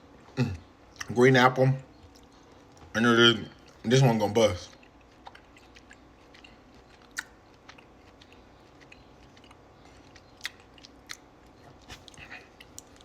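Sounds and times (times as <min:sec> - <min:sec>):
person chewing gummy candy: 0:04.6 - 0:13.0.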